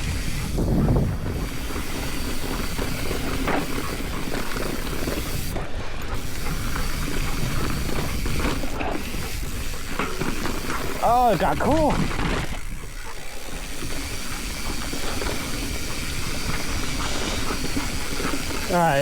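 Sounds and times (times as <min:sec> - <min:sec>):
wind rushing over microphone: 0:00.0 - 0:01.9
bike rattling over rocks: 0:00.0 - 0:19.0.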